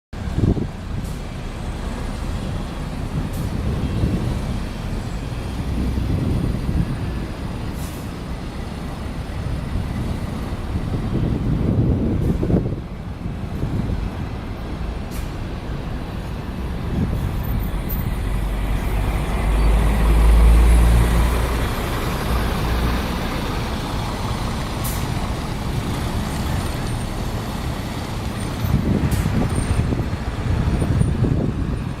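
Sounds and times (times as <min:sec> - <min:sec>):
diesel engine rumbling: 0:00.2 - 0:32.0.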